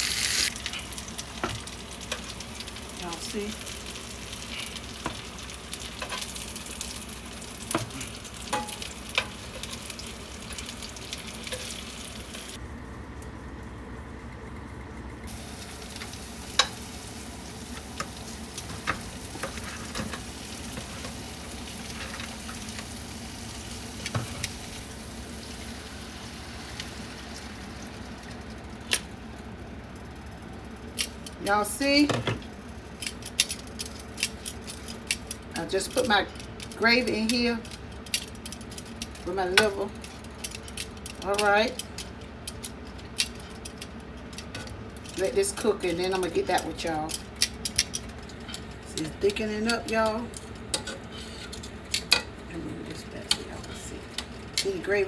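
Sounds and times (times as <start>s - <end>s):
livers sizzling in a pan: 0.0s - 55.0s
utensil scraping a pan: 50.8s - 51.6s.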